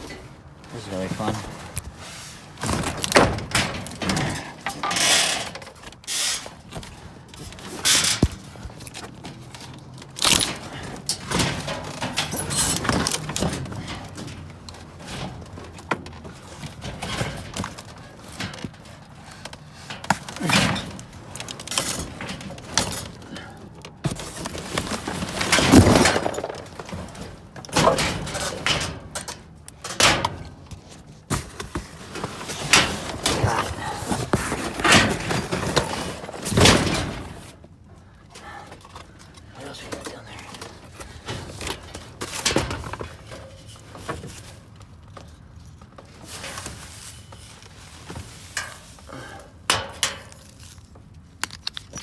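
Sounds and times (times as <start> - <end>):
metal clanking in a dumpster: 0.0 - 39.0, 39.6 - 51.2.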